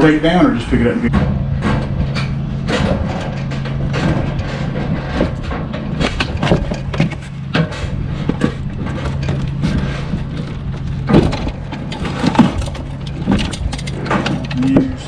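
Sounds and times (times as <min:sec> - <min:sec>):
steady low hum: 0:00.0 - 0:15.0
knocks and clatter: 0:01.1 - 0:15.0.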